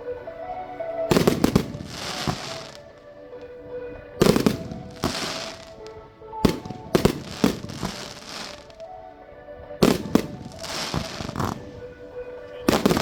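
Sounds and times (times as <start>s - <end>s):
crackling hiss: 0.0s - 3.6s, 4.2s - 9.0s, 9.8s - 13.0s
music: 0.0s - 13.0s
fireworks exploding: 1.1s - 3.0s, 4.2s - 8.8s, 9.8s - 13.0s.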